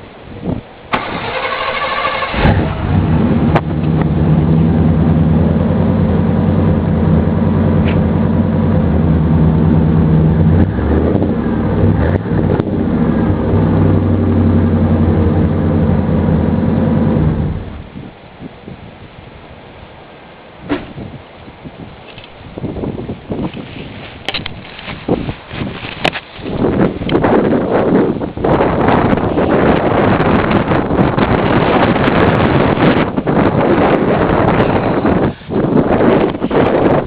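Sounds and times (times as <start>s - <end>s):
starter cranking: 0.9s - 2.9s
truck engine idling: 0.9s - 17.8s.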